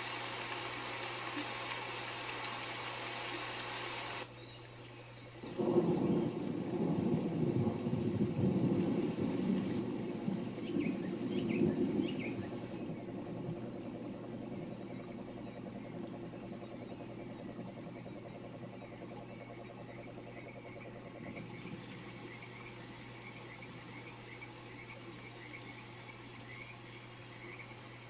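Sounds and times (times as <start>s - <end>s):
steady rain: 0.0s - 4.4s, 5.2s - 28.0s
rolling thunder: 5.5s - 18.2s
faint pulsing trill: 9.8s - 28.0s.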